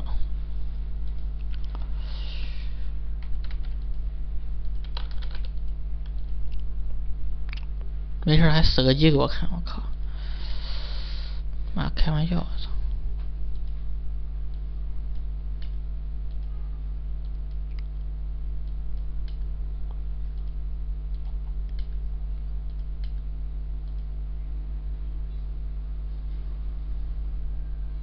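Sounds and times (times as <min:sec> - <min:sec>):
low electrical hum: 0:00.0 - 0:28.0
computer mouse clicks: 0:14.5 - 0:16.6, 0:17.2 - 0:22.0, 0:22.6 - 0:24.1.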